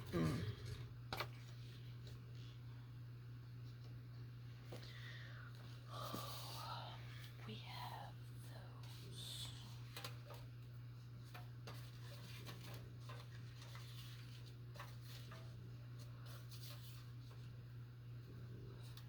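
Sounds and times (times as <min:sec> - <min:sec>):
steady low hum: 0:00.0 - 0:19.0
paper cut-outs rustling: 0:11.2 - 0:17.5.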